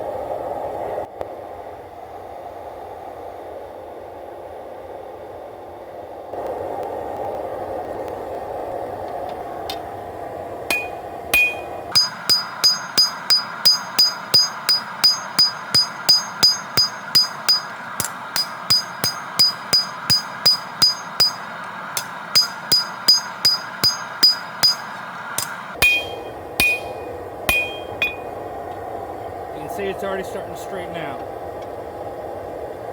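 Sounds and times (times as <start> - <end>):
steady background hiss: 6.4 - 32.9
hammer striking blade on anvil: 10.7 - 28.4.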